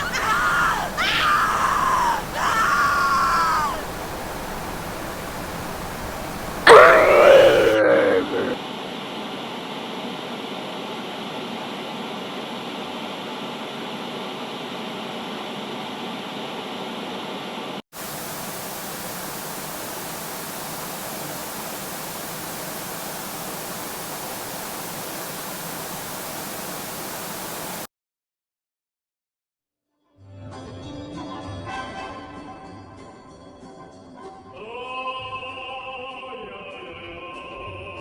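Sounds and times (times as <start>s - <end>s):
static hiss: 0.0s - 7.8s, 18.0s - 27.9s.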